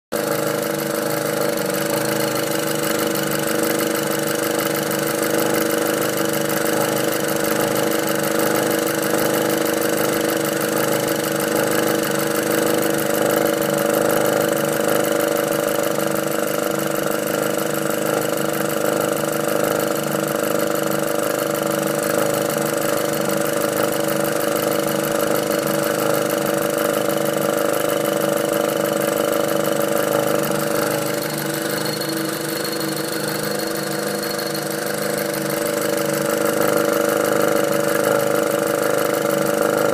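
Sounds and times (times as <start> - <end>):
car engine idling: 0.1 - 39.9
fast even ticking: 28.0 - 39.5.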